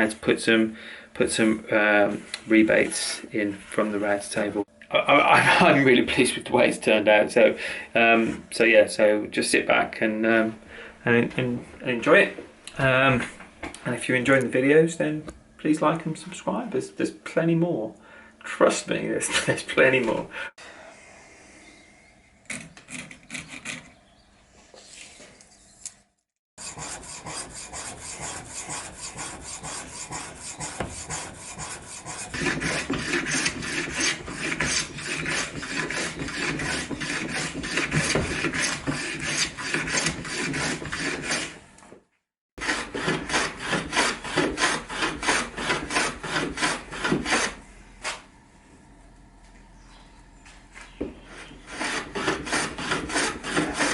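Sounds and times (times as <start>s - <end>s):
sanding wood by hand: 26.6s - 41.6s, 42.6s - 48.2s, 51.3s - 53.9s.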